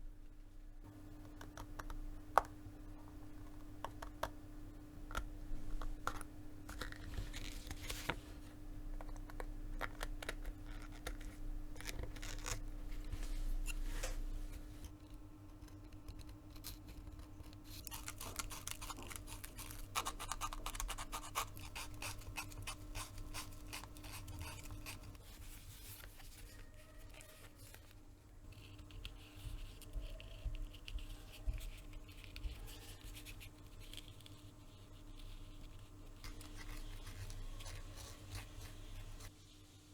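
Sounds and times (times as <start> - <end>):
faint steady hum: 0.0 - 39.9.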